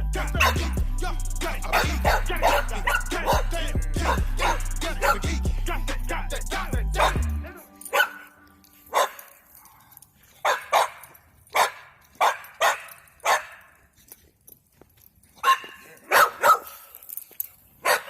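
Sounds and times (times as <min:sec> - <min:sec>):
puppy barking: 0:00.4 - 0:00.7, 0:01.7 - 0:05.3, 0:07.0 - 0:07.3, 0:07.9 - 0:09.4, 0:10.4 - 0:13.8, 0:15.4 - 0:16.9, 0:17.8 - 0:18.0.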